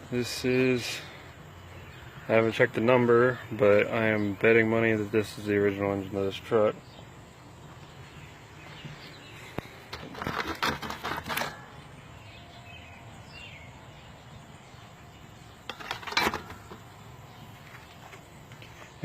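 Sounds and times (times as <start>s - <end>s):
insects: 0.0s - 19.0s
metallic clanking and rattling: 9.9s - 11.8s, 15.7s - 16.9s.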